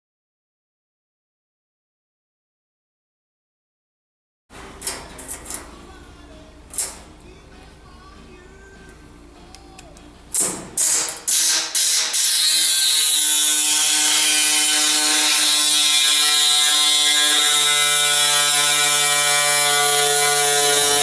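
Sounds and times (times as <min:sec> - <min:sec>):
power tool buzzing on sheet steel: 0:10.8 - 0:21.0.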